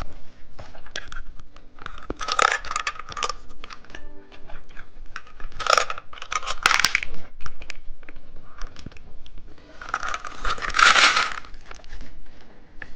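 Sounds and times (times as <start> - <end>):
plastic wrapper crinkling and tearing: 1.8 - 9.0, 9.8 - 12.2.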